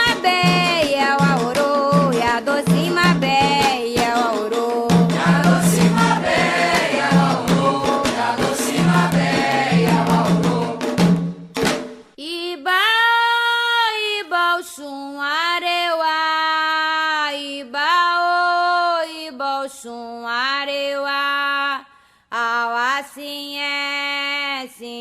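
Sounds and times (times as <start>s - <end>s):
person singing unaccompanied: 0.0s - 11.0s
choir singing over percussion: 0.0s - 11.3s.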